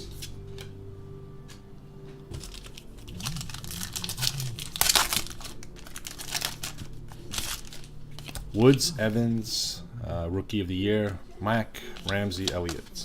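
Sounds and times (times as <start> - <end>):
foil wrapper crinkling and tearing: 2.4 - 9.0.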